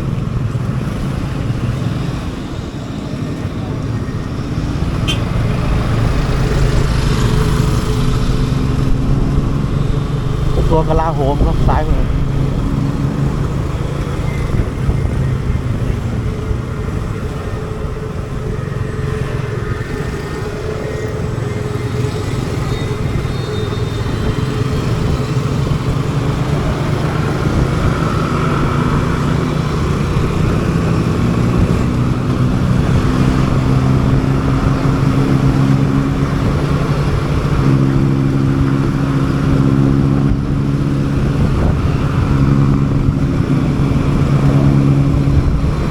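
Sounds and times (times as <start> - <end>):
road and traffic noise: 0.0 - 45.9.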